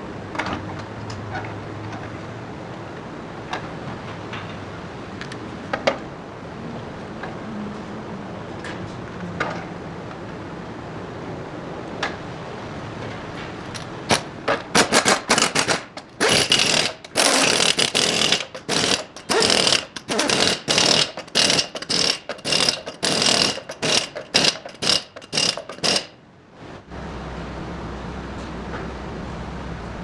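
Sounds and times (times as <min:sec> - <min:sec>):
impact wrench hammering: 0:14.1 - 0:26.2.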